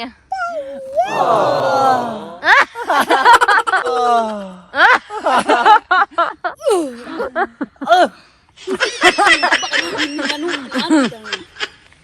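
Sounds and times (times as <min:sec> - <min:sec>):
person crying out: 0:00.3 - 0:02.5, 0:03.7 - 0:04.6, 0:06.6 - 0:07.2
people laughing: 0:01.0 - 0:08.1, 0:08.7 - 0:11.6.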